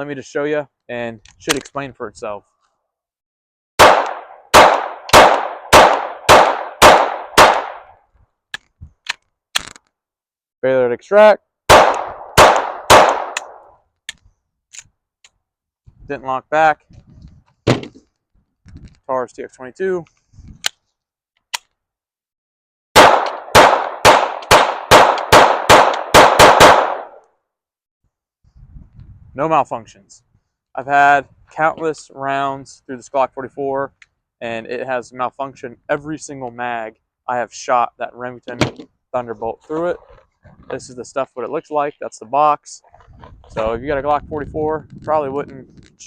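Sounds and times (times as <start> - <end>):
pistol shots with ringing echo: 3.8 - 7.9, 11.7 - 13.7, 23.0 - 27.2.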